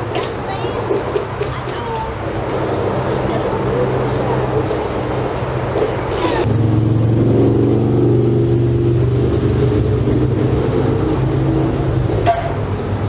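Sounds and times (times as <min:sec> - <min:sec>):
steady motor drone: 0:01.5 - 0:13.0.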